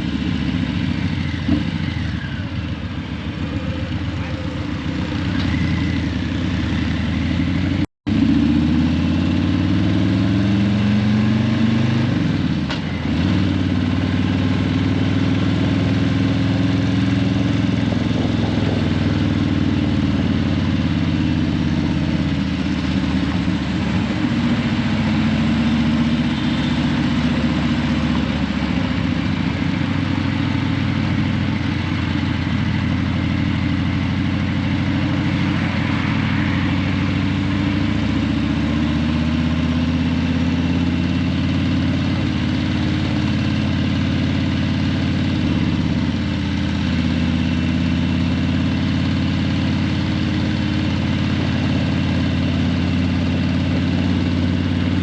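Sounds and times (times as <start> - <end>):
motorcycle engine running at low revs: 0.0 - 55.0.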